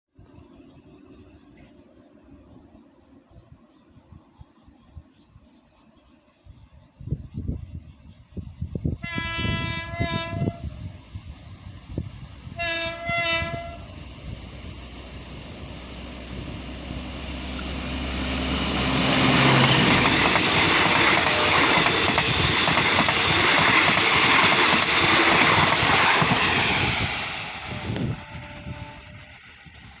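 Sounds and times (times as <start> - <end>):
locomotive engine drone: 10.6 - 30.0
train wheels clattering: 17.6 - 28.7.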